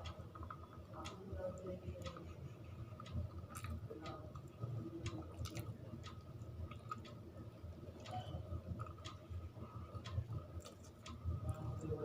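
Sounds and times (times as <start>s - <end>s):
wet chewing and lip-smacking: 3.3s - 5.8s, 6.7s - 7.2s, 10.6s - 11.2s.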